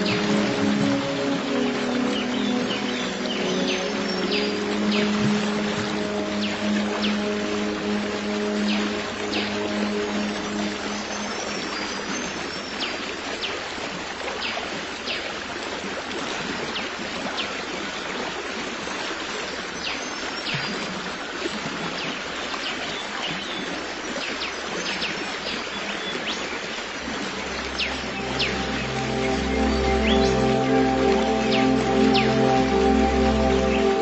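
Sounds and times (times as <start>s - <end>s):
music: 0.0s - 12.2s, 27.1s - 34.0s
stream of water flowing: 0.0s - 34.0s.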